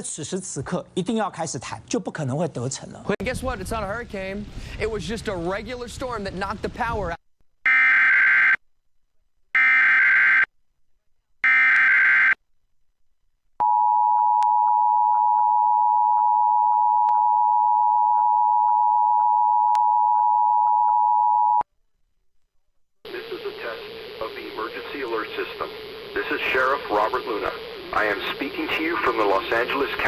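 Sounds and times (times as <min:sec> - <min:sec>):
digital data bursts: 0:23.1 - 0:30.0.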